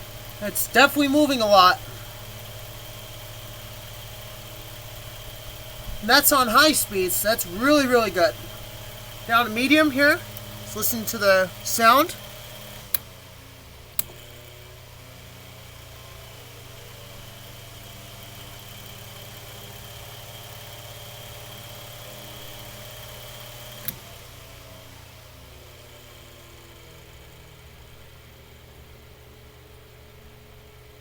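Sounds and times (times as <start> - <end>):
fan motor hum with whine: 0.0 - 31.0
sharp clicks: 10.2 - 10.5.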